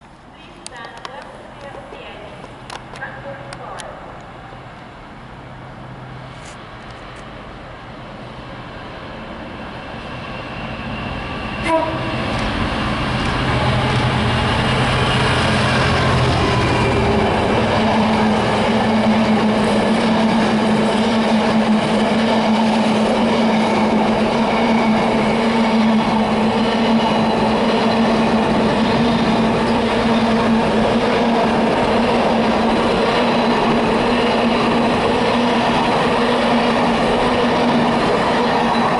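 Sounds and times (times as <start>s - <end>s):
diesel locomotive engine: 0.2s - 38.9s
train wheels rumbling on rail: 6.0s - 38.9s.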